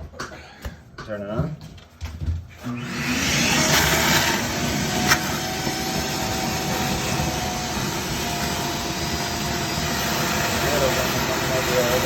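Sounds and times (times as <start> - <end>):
vacuum cleaner running: 2.6 - 12.0.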